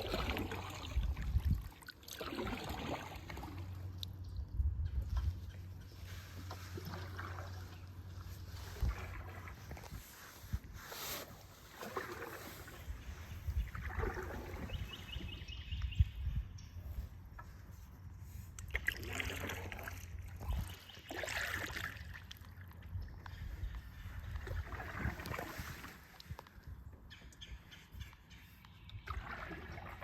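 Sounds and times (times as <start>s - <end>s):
paddle strokes through water: 0.0s - 30.0s
low steady rumble: 2.7s - 11.8s.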